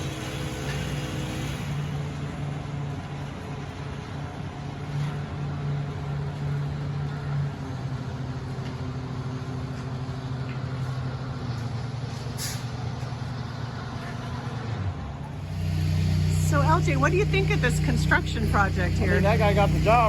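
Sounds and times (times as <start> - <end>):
heavy construction engine running: 0.0 - 20.0
sharp hiss of air: 12.3 - 12.8.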